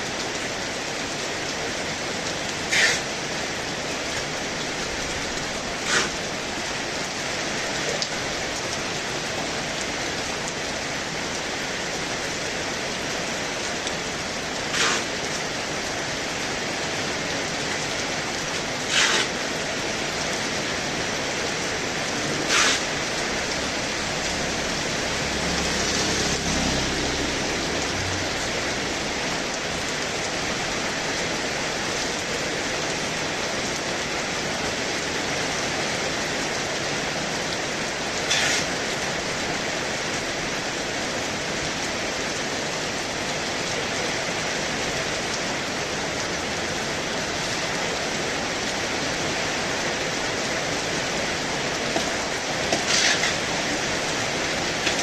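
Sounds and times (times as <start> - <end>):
heavy rain pouring: 0.0 - 55.0
short swishes: 22.5 - 22.8.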